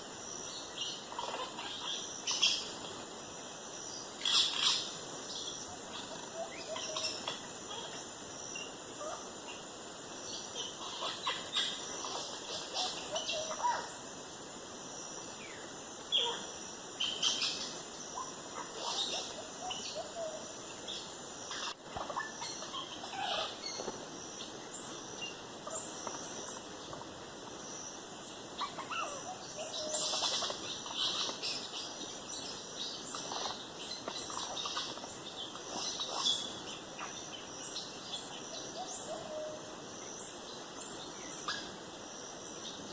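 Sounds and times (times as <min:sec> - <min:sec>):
birds chirping and calling: 0:00.6 - 0:03.0, 0:04.0 - 0:14.0, 0:16.1 - 0:27.1, 0:27.7 - 0:41.9.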